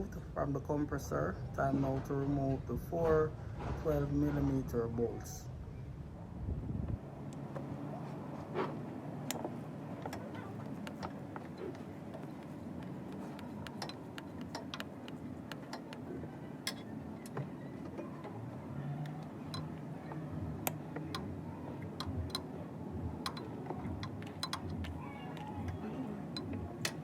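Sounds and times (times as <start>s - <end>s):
low steady hum: 0.0s - 27.0s
hand tools clicking on bolts: 9.3s - 18.0s, 23.2s - 27.0s.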